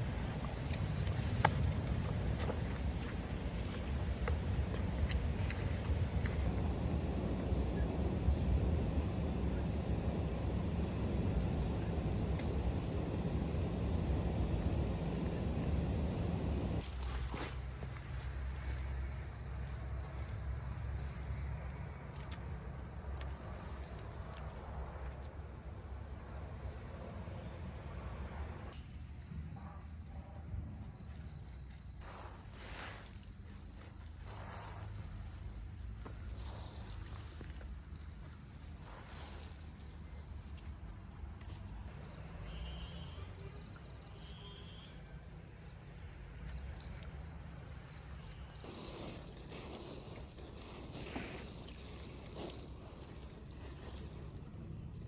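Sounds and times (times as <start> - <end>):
insects chirring: 16.8 - 55.0.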